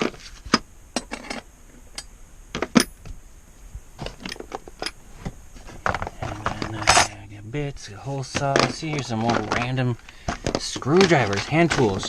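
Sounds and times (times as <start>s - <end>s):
metal tools clinking: 1.0s - 2.1s, 4.0s - 5.0s, 6.3s - 7.2s.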